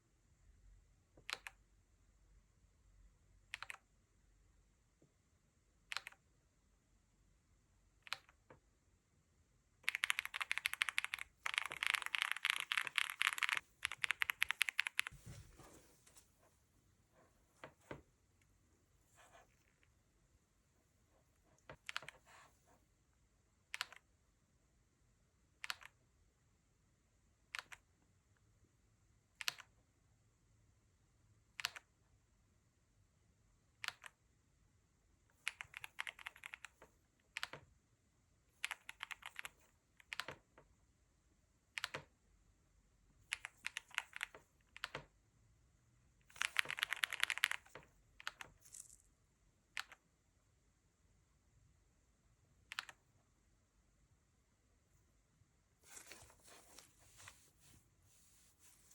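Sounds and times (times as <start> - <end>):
mechanical keyboard typing: 9.8 - 15.1, 35.4 - 36.8, 38.6 - 40.4, 43.3 - 45.0, 46.3 - 48.6.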